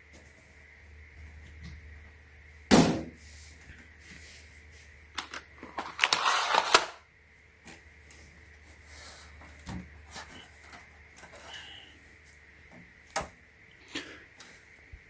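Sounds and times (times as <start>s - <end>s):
clicks and scraping: 5.2s - 7.0s.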